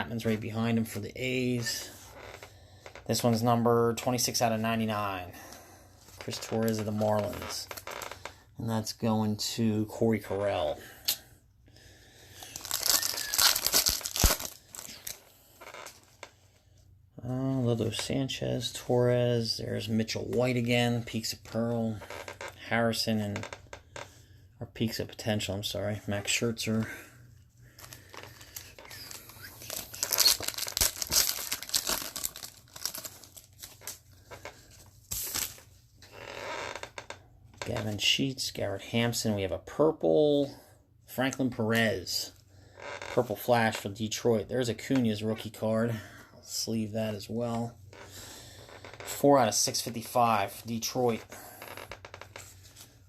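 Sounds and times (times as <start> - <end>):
foil wrapper tearing and crinkling: 12.4 - 15.9, 27.8 - 35.6.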